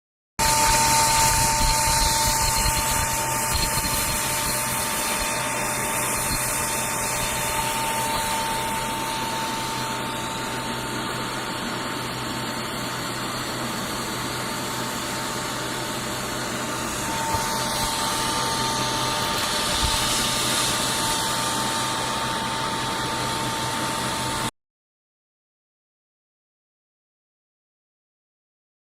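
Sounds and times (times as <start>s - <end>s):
plasma arc hissing: 0.4s - 14.8s, 15.5s - 23.2s
high whine: 0.4s - 24.5s.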